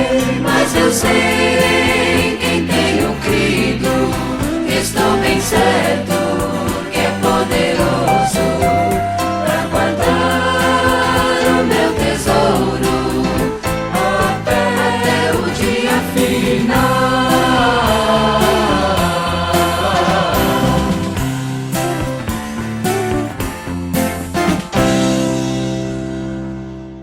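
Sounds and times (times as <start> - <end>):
vocal group singing in harmony: 0.0 - 21.6
band with steady beat: 0.0 - 26.0.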